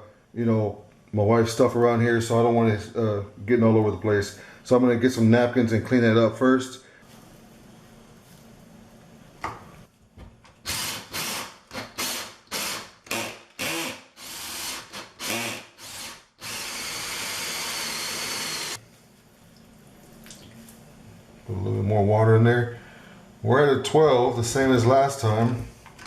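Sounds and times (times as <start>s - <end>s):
paper napkins wiping countertop: 7.0s - 8.6s.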